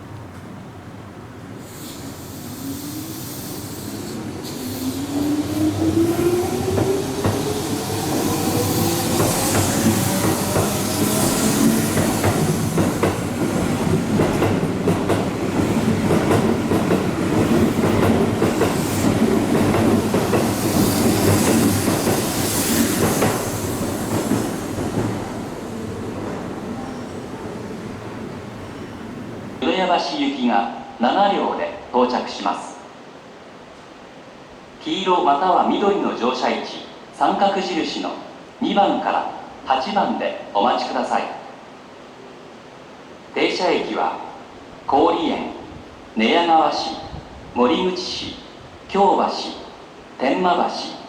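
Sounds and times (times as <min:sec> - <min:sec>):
train wheels clattering on rails: 0:03.7 - 0:29.6.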